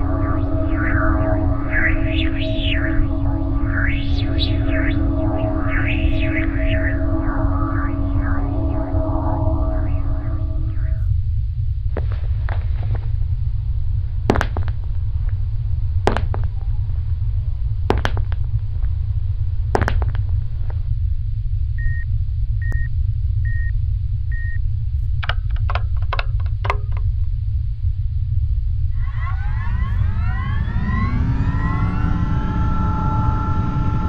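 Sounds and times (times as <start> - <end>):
high electronic beeps: 0.0 - 11.1
low rumbling drone: 0.0 - 34.0
sharp knocks: 14.3 - 14.7, 16.1 - 16.5, 17.9 - 18.4.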